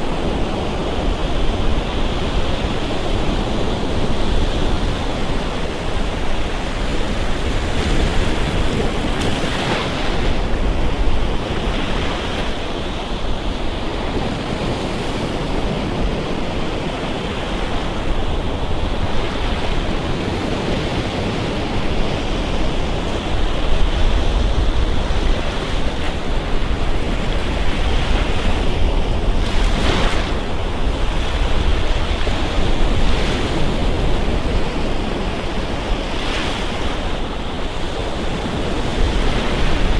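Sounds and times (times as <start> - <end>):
surf breaking on a beach: 0.0 - 39.9
wind rumble on microphone: 0.0 - 39.9.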